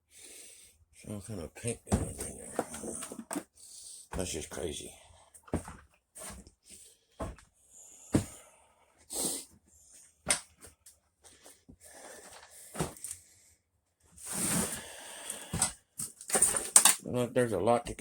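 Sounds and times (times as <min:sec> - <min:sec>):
rustling of junk: 0:01.9 - 0:03.5, 0:05.4 - 0:06.6, 0:07.2 - 0:07.5, 0:10.3 - 0:13.2, 0:15.4 - 0:17.0.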